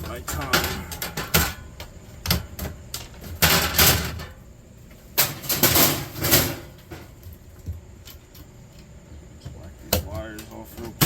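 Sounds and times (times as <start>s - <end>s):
scrap clattering and scraping: 0.0s - 7.4s.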